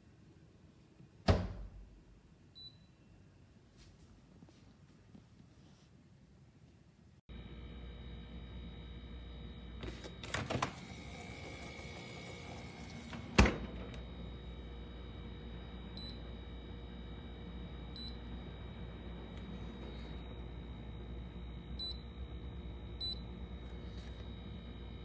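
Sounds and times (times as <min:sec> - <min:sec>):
faint touch-panel beeps: 0:02.5 - 0:03.2, 0:15.9 - 0:16.3, 0:17.9 - 0:18.3, 0:21.8 - 0:22.1, 0:23.0 - 0:23.3
wine cooler humming: 0:07.3 - 0:25.0.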